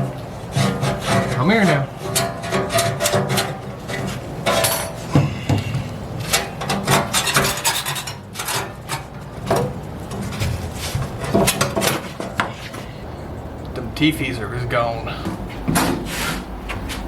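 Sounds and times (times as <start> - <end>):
metal scraping and rasping: 0.0 - 13.0
sharp metal clanks: 4.4 - 9.7.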